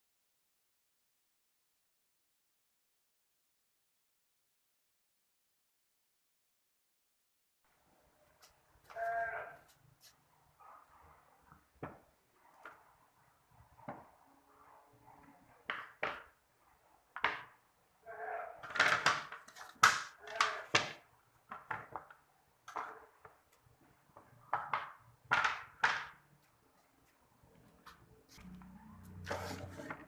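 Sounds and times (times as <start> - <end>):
hard objects knocking and clattering: 18.6 - 26.2.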